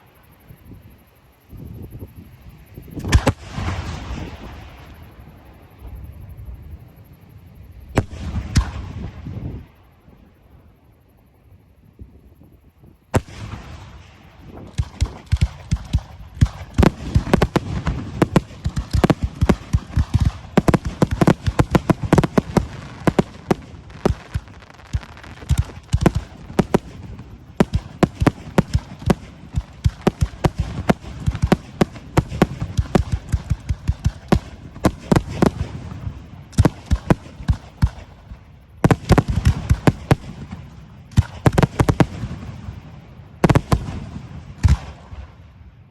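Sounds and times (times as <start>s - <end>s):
aerial firework shells bursting: 13.1s - 45.4s.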